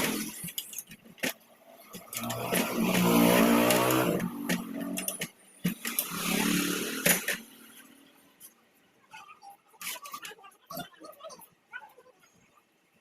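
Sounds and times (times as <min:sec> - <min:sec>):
small petrol engine running: 0:00.0 - 0:00.4, 0:02.0 - 0:07.8.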